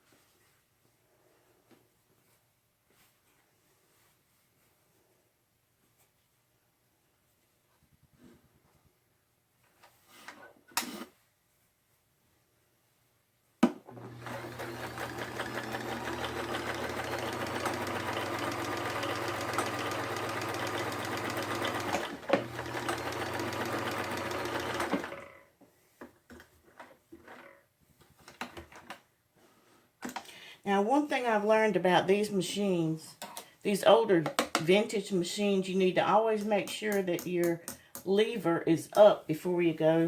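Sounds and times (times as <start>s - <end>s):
sewing machine running: 13.9s - 25.4s.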